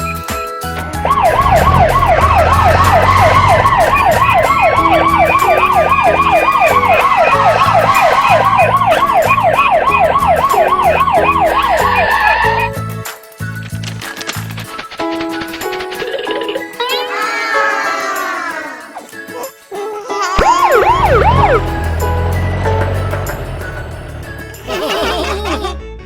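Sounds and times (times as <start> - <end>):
background music: 0.0 - 26.0
cartoon siren wail: 1.0 - 12.8, 20.4 - 23.8.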